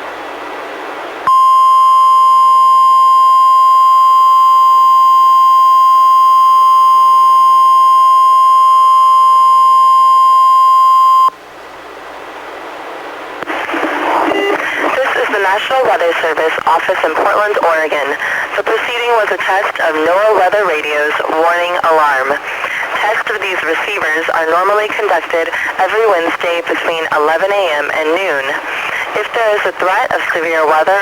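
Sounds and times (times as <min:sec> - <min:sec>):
steady high alarm tone: 0:01.3 - 0:11.3
radio hiss: 0:13.4 - 0:31.0.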